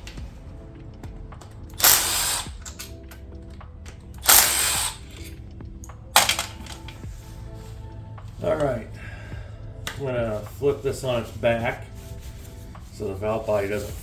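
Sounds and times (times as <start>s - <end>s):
power tool removing bolts: 1.7s - 3.2s, 4.2s - 5.4s, 6.2s - 7.0s.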